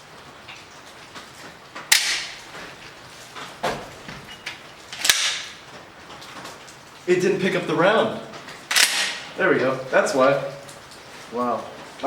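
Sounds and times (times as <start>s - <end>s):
shotgun shots: 1.9s - 2.4s, 8.7s - 9.2s.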